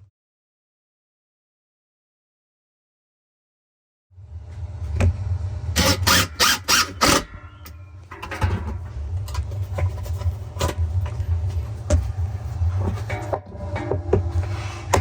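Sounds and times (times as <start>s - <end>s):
steady low hum: 4.2s - 15.0s.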